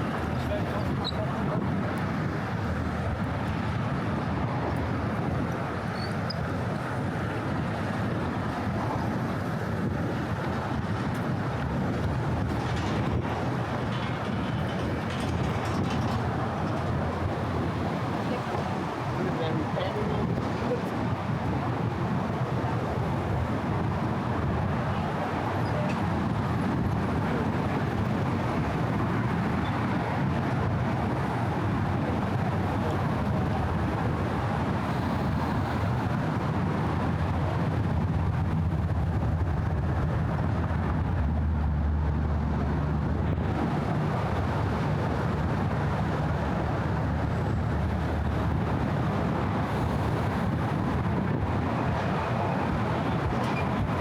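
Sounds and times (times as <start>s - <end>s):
road traffic rumble: 0.0s - 54.0s.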